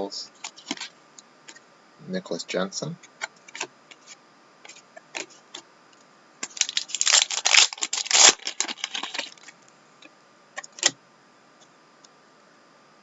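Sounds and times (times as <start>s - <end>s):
foil wrapper crinkling and tearing: 6.4s - 9.5s.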